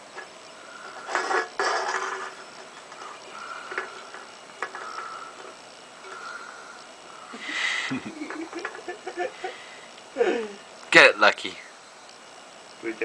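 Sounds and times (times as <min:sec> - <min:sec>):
can scraping against glass: 0:00.0 - 0:06.8.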